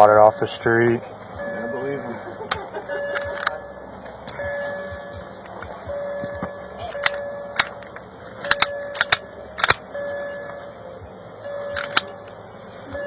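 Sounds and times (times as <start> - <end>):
steady electronic tone: 0.0 - 13.0
hard objects clicking: 2.5 - 3.6, 5.5 - 9.8, 11.7 - 12.1.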